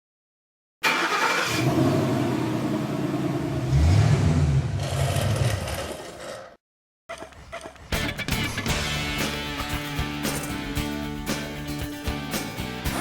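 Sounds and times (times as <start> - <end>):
car engine starting and revving: 0.8 - 6.0.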